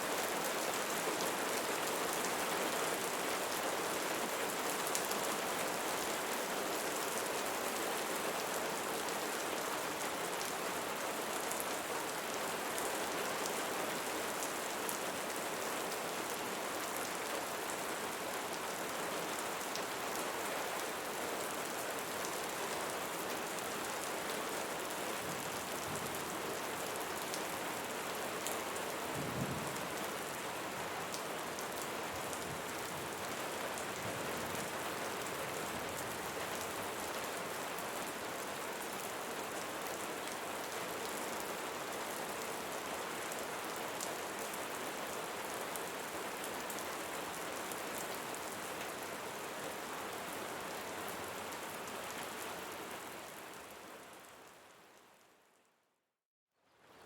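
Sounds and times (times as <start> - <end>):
steady rainfall: 0.0 - 55.2.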